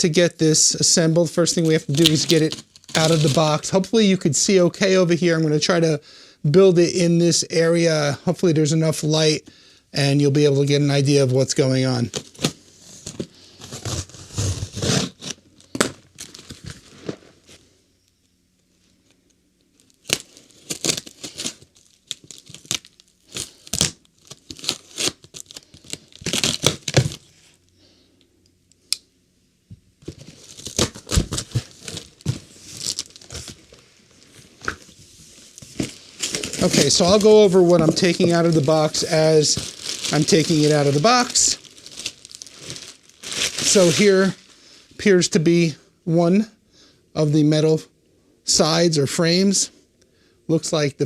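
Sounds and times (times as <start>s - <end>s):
packaging crinkling: 1.5s - 3.7s, 12.0s - 17.6s, 19.6s - 27.6s, 30.0s - 44.6s
packing tape and cardboard tearing: 1.6s - 3.6s, 12.1s - 17.2s, 19.8s - 27.3s, 30.0s - 33.8s, 34.6s - 44.3s.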